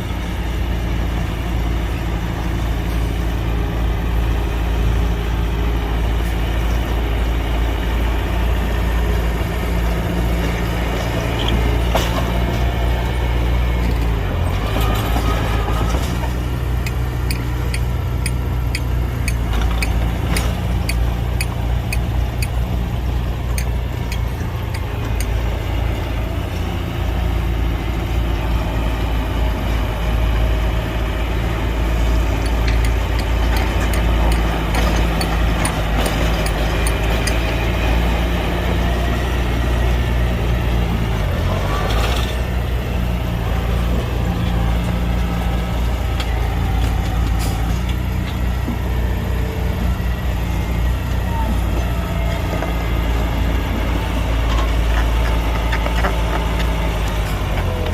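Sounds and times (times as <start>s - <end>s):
heavy diesel engine humming: 0.0s - 57.9s
sharp clicks: 16.7s - 22.8s, 23.4s - 25.4s.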